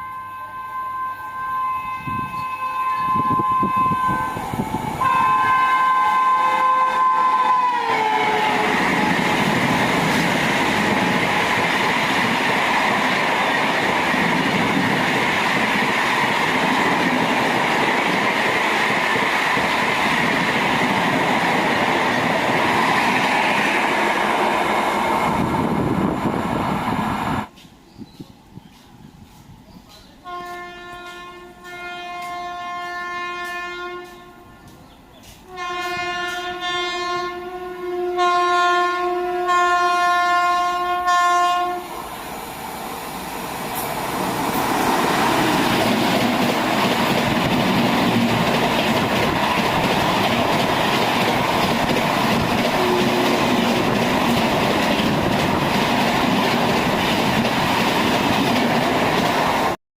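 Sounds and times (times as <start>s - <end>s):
train horn blasts: 0.0s - 4.4s, 5.0s - 9.2s, 30.2s - 34.7s, 35.5s - 41.9s, 52.7s - 53.7s
train passing with wheel clatter: 0.0s - 59.8s.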